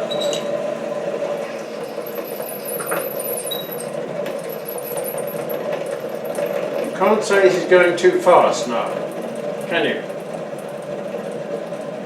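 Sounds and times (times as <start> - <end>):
cutting tool squeaking on metal: 0.0 - 0.5, 2.4 - 3.8
lathe running: 0.0 - 12.0.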